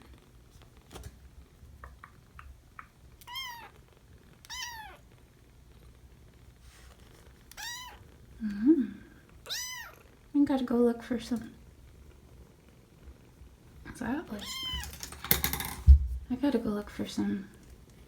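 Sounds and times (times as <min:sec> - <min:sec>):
kitten mewing: 0:02.4 - 0:03.7, 0:04.5 - 0:05.0, 0:07.5 - 0:08.0, 0:09.4 - 0:10.0, 0:14.4 - 0:15.1.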